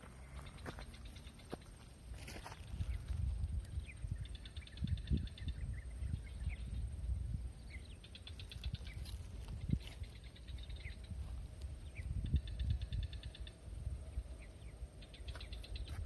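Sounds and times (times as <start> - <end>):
wind rumble on microphone: 0.0 - 16.0.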